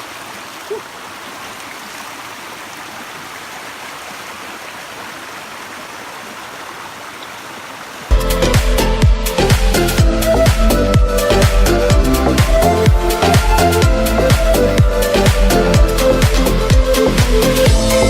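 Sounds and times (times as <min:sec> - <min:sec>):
stream water rushing: 0:00.0 - 0:18.0
electronic dance music: 0:08.1 - 0:18.0.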